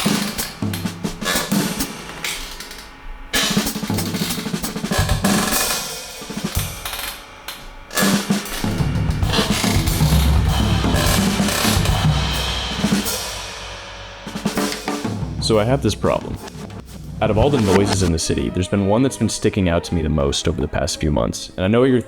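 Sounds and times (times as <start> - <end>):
drum-heavy music: 0.0 - 2.6, 8.0 - 18.7.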